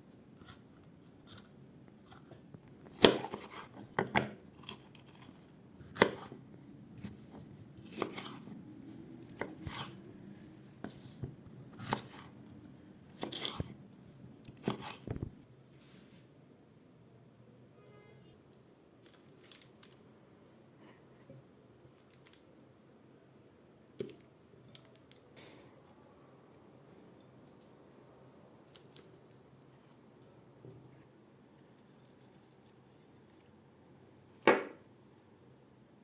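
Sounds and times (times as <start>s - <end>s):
knife chopping on cutting board: 3.0s - 4.4s, 5.8s - 6.4s, 7.8s - 8.4s, 34.5s - 34.8s.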